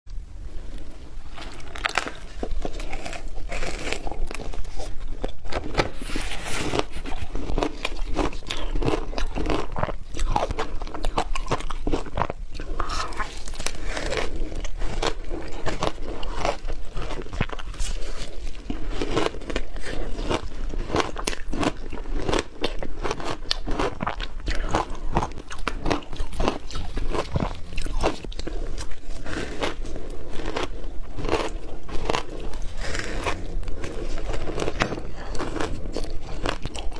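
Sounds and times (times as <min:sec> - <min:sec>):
teeth crunching ice: 0:01.4 - 0:06.0, 0:06.6 - 0:36.9.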